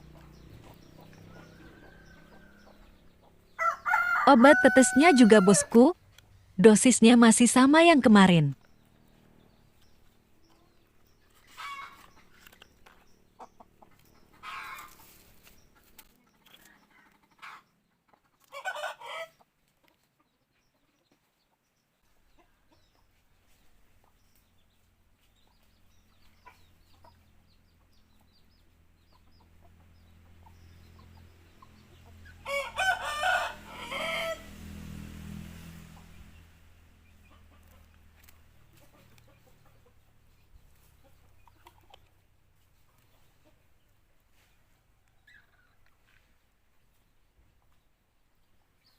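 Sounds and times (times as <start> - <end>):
jungle fowl calling: 3.6 - 6.0, 11.5 - 12.1, 14.4 - 15.2, 32.4 - 34.5.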